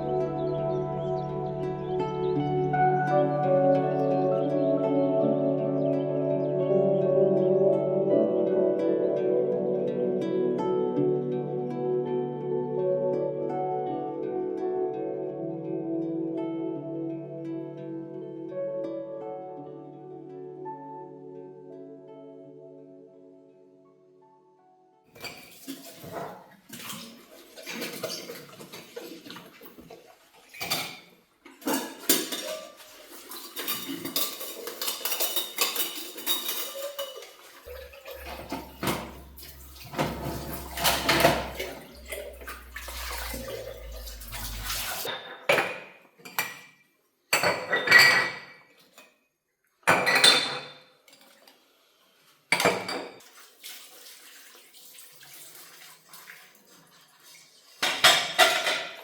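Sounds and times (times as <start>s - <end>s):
dishes and cutlery clinking: 25.2s - 46.7s, 47.3s - 49.1s, 49.9s - 51.4s, 57.8s - 59.0s
low hum: 37.7s - 45.1s.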